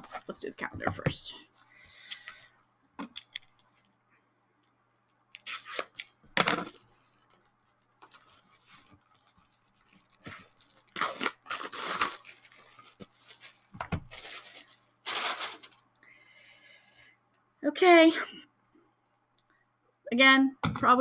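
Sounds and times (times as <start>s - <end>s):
wrapping torn and crinkled: 5.3s - 15.8s.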